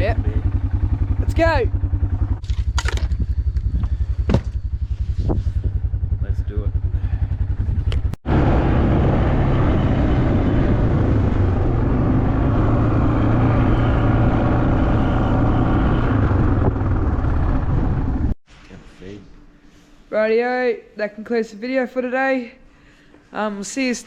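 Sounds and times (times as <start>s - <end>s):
four-wheeler engine droning: 0.0s - 18.4s.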